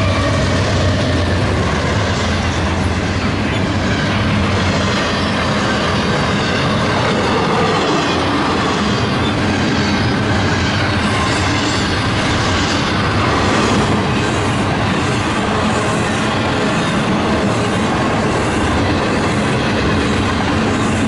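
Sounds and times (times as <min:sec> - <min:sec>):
freight train wheels rumbling: 0:00.0 - 0:21.0.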